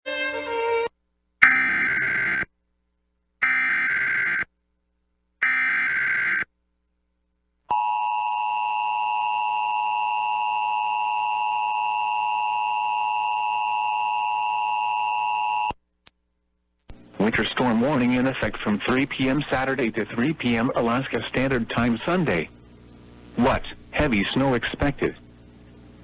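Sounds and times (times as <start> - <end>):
long steady attention tone: 7.7 - 15.8.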